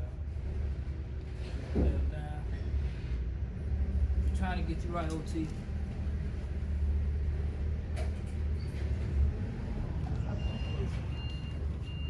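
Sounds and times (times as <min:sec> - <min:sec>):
reversing alarm beeping: 0:10.4 - 0:12.0.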